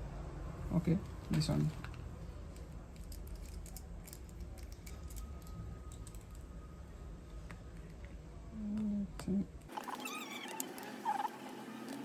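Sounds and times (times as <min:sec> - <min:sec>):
small tools and screws clicking: 0:01.8 - 0:06.5.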